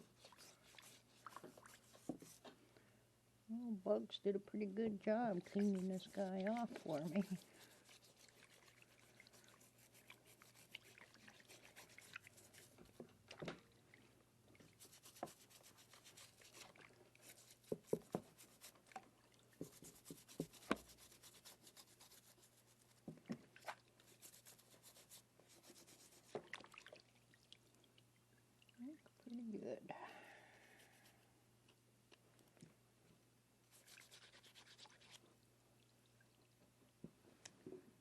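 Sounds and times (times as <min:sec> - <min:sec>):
brush scrubbing on skull: 0:00.0 - 0:02.6, 0:05.3 - 0:13.0, 0:14.7 - 0:18.9, 0:19.6 - 0:23.0, 0:24.0 - 0:26.4, 0:33.7 - 0:35.2.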